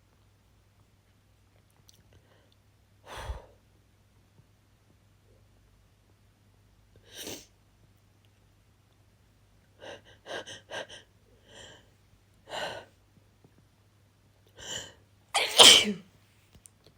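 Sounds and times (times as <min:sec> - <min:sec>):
person sneezing loudly: 0:15.4 - 0:16.0.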